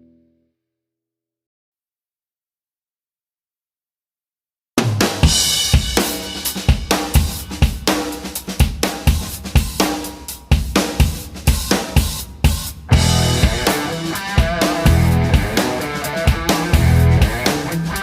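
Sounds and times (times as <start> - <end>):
drum kit playing a steady beat: 4.8 - 18.0.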